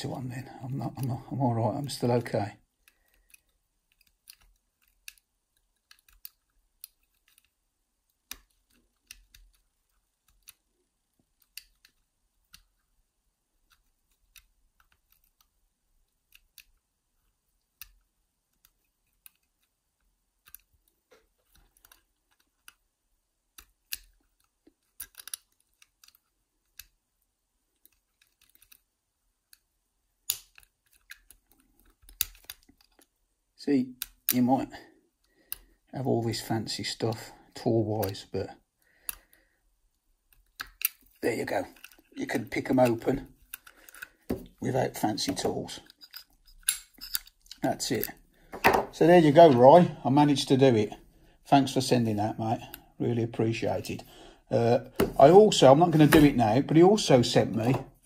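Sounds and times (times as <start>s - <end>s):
lock picks clicking in lock: 2.8s - 7.6s, 23.6s - 27.0s, 27.8s - 28.8s, 30.2s - 33.1s, 40.3s - 41.1s, 45.8s - 48.1s.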